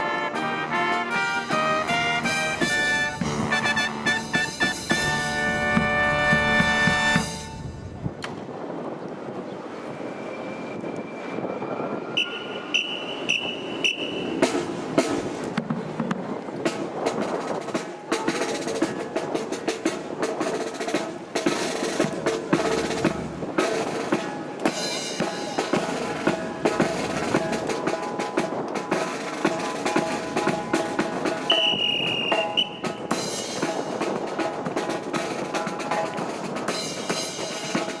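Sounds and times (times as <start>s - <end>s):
held brass notes: 0.0s - 8.0s
snare drum beat: 0.5s - 7.6s, 29.0s - 38.0s
bass drum beat: 1.6s - 7.6s.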